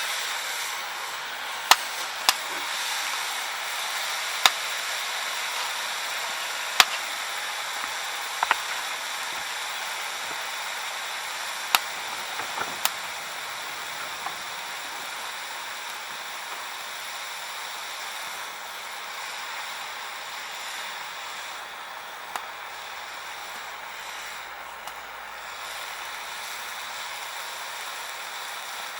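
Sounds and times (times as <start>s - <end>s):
firewood fire crackling: 0.0s - 28.7s
sharp pops and snaps: 5.5s - 16.8s.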